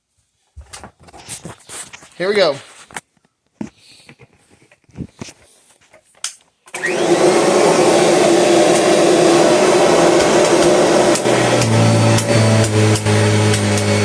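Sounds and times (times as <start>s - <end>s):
vacuum cleaner motor running: 6.7s - 14.0s.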